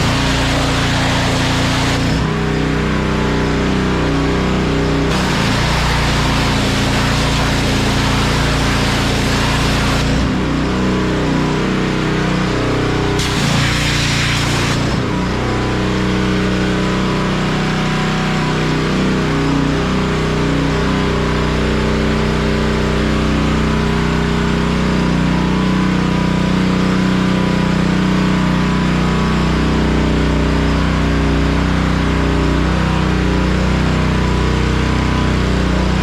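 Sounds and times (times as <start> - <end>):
water spray hissing: 0.0 - 2.1, 5.1 - 10.2, 13.2 - 14.9
pressure washer engine humming: 0.0 - 25.5.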